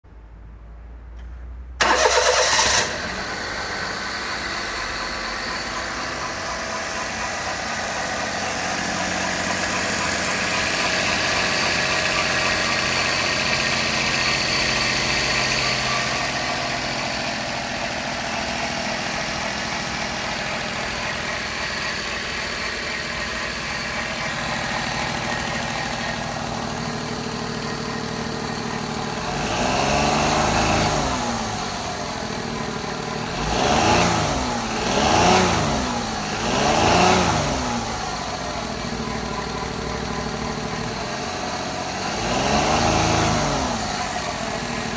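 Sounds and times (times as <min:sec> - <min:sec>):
engine cranking: 0:01.8 - 0:03.4
car engine idling: 0:01.8 - 0:44.9.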